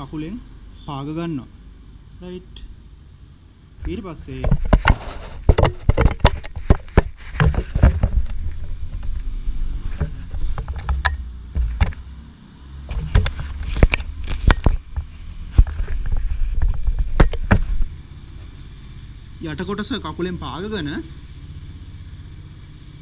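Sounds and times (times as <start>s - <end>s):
metal tools knocking and clanking: 4.4s - 9.1s, 10.0s - 12.0s.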